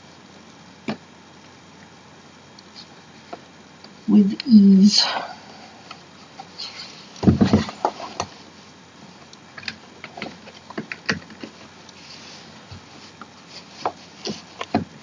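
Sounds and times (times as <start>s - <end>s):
knocks of chair parts fitted: 7.2s - 8.3s.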